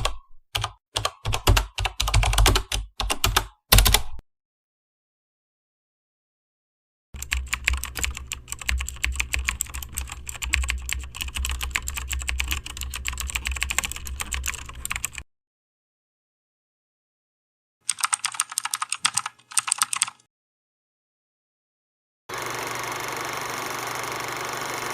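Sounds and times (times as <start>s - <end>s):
fast keyboard typing: 0.0s - 4.2s, 7.2s - 15.2s, 17.9s - 20.3s.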